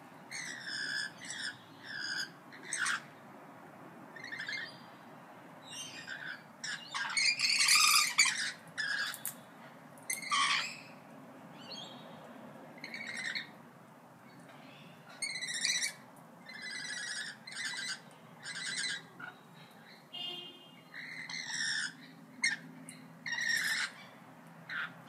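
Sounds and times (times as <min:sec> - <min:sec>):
parrots squawking and calling: 0:00.3 - 0:03.1, 0:04.1 - 0:04.8, 0:05.6 - 0:09.4, 0:10.1 - 0:11.0, 0:12.8 - 0:13.6, 0:15.1 - 0:19.5, 0:20.9 - 0:25.0.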